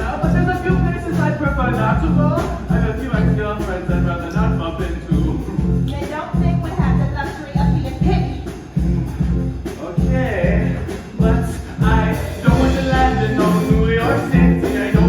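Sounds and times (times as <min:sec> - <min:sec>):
live band playing upbeat song: 0:00.0 - 0:15.0
steady bass beat: 0:00.0 - 0:15.0
people singing: 0:09.8 - 0:15.0.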